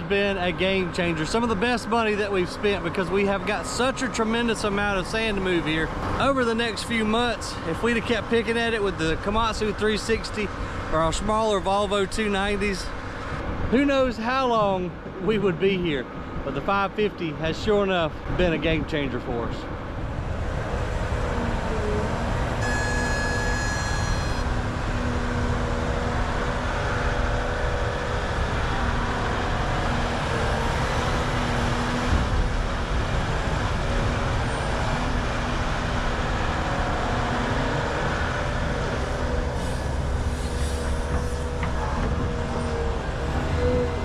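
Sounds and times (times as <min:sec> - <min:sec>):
excavator diesel engine running: 0:21.3 - 0:24.8
brief high-pitched whine: 0:22.6 - 0:24.5.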